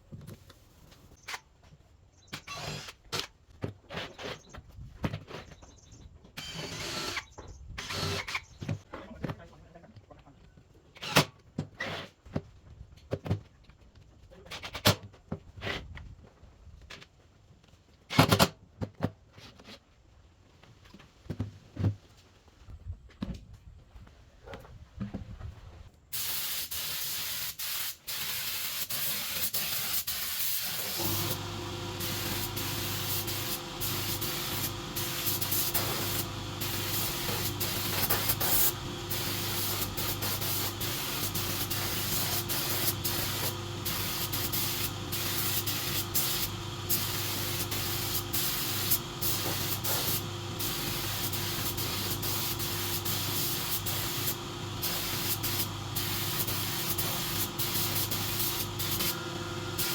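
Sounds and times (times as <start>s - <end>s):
motor hum: 30.8s - 59.9s.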